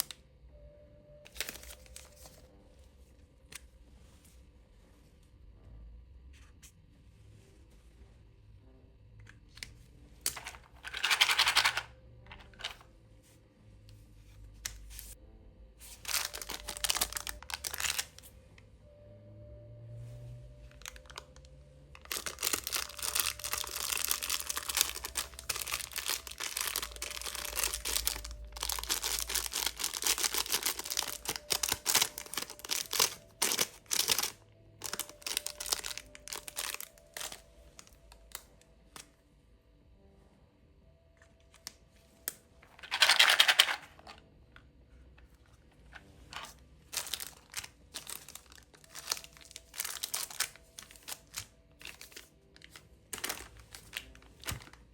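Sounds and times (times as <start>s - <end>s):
plastic wrappers crinkling: 1.3s - 2.4s, 15.8s - 18.3s, 20.6s - 38.5s, 42.8s - 44.1s, 46.0s - 54.9s
plastic wrapper tearing: 16.1s - 18.2s, 22.0s - 38.4s, 46.9s - 54.8s.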